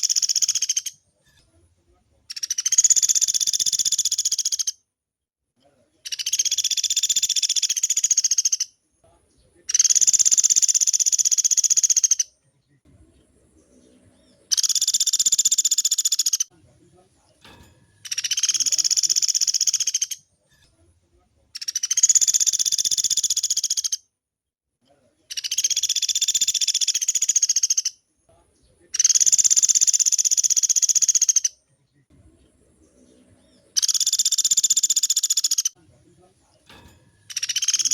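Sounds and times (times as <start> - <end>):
bird singing high-pitched trills: 0.0 - 1.0, 2.3 - 4.8, 6.1 - 8.7, 9.7 - 12.3, 13.6 - 16.5, 18.0 - 20.3, 21.6 - 24.0, 25.3 - 28.0, 28.9 - 31.6, 32.9 - 35.8, 36.8 - 37.9.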